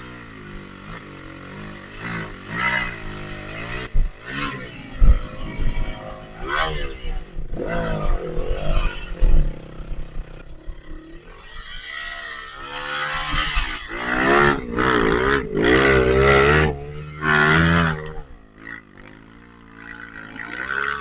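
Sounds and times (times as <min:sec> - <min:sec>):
motorcycle engine revving: 0:00.0 - 0:21.0.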